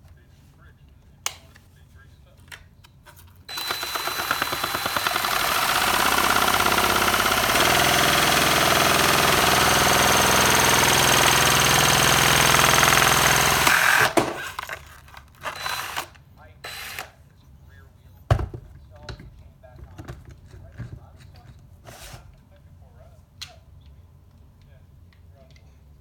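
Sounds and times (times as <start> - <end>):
plastic parts rattling fast: 3.5 - 16.2
power drill running: 3.5 - 17.1.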